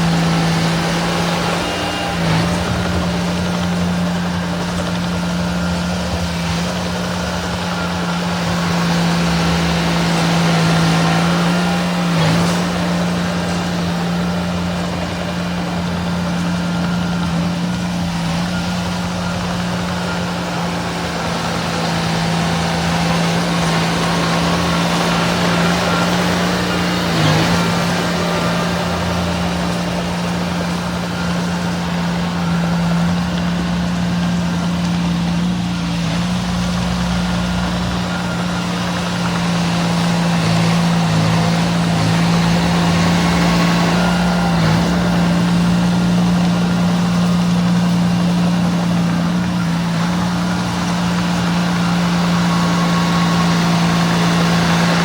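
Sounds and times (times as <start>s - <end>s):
diesel engine running under load: 0.0s - 55.0s.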